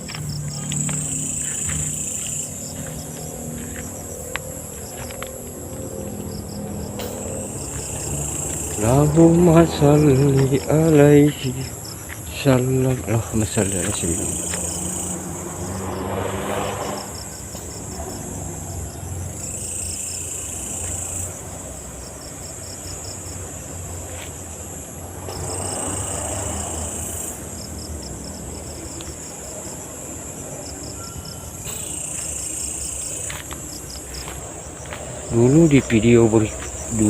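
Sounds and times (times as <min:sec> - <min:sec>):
high-pitched insect drone: 0:00.0 - 0:23.9, 0:24.6 - 0:37.0
crickets chirping in pulses: 0:00.0 - 0:37.0.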